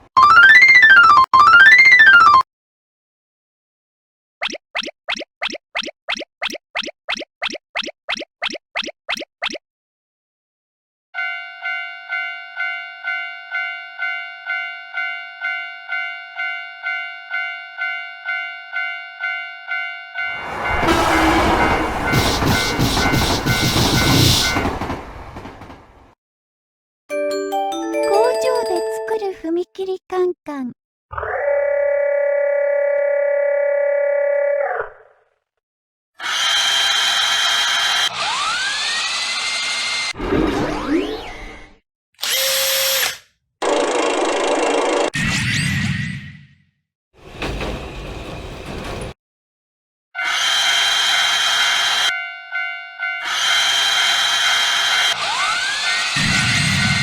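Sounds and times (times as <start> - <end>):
crossing warning bell ringing: 11.2 - 24.5, 52.1 - 53.8
drill whirring: 42.2 - 43.3.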